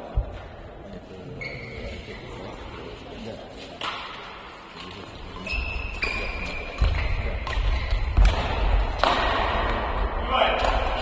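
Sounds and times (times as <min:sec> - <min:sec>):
racket striking shuttlecock: 0:06.0 - 0:09.8.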